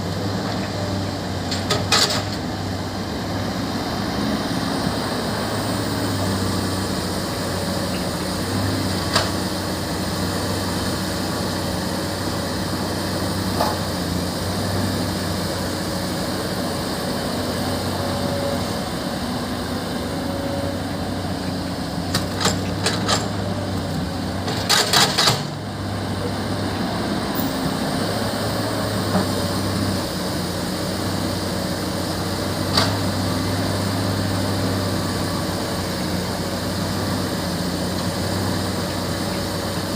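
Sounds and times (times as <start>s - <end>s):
diesel engine running: 0.0s - 39.9s.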